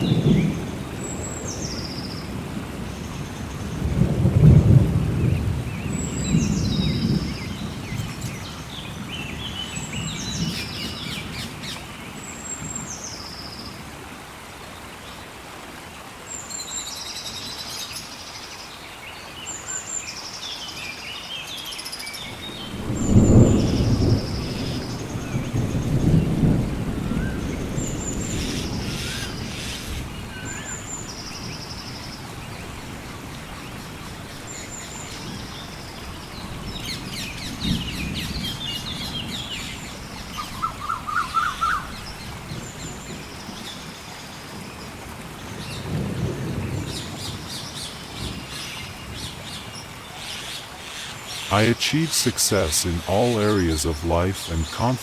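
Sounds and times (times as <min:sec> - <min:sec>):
steady rain: 0:00.0 - 0:55.0
low rolls of thunder: 0:03.8 - 0:08.4, 0:22.5 - 0:28.9.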